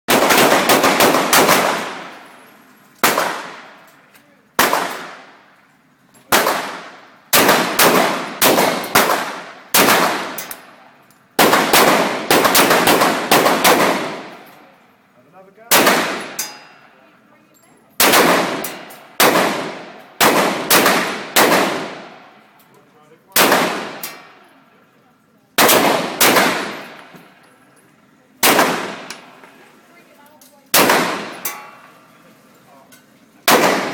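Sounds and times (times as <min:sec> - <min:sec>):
pistol shots with ringing echo: 0:00.1 - 0:02.4, 0:03.0 - 0:03.9, 0:04.6 - 0:05.4, 0:06.3 - 0:14.6, 0:15.7 - 0:16.9, 0:18.0 - 0:22.4, 0:23.3 - 0:24.5, 0:25.6 - 0:27.1, 0:28.4 - 0:29.4, 0:30.7 - 0:31.9, 0:33.4 - 0:33.9.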